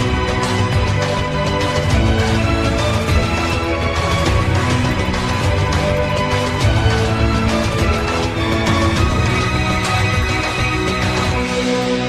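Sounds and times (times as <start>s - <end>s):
held synth notes: 2.2s - 12.0s
steady driving low beat: 2.2s - 12.0s.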